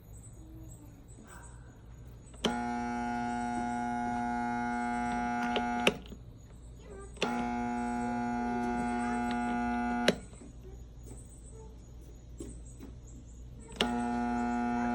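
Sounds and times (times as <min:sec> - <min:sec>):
pressure washer motor buzzing: 0:02.4 - 0:06.1, 0:07.2 - 0:10.4, 0:13.7 - 0:14.9.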